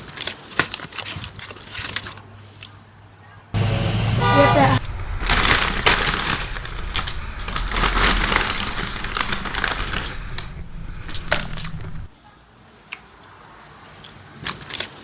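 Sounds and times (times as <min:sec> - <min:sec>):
crunching and crackling: 0:05.0 - 0:12.1.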